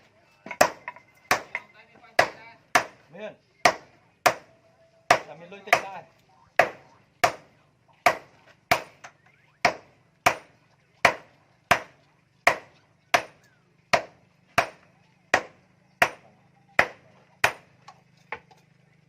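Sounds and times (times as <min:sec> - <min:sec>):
hammer striking metal on anvil: 0:00.4 - 0:03.0.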